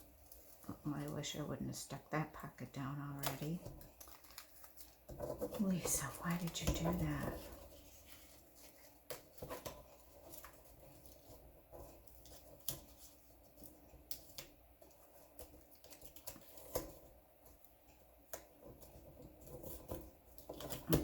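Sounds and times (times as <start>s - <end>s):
paper rustling: 3.2s - 17.0s.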